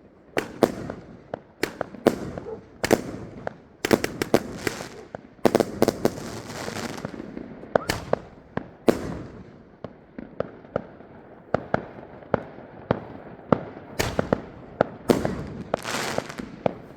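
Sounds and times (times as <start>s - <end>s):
fireworks shots: 0.3s - 10.9s, 11.5s - 16.9s
firework crackle: 0.4s - 9.5s, 13.0s - 16.9s.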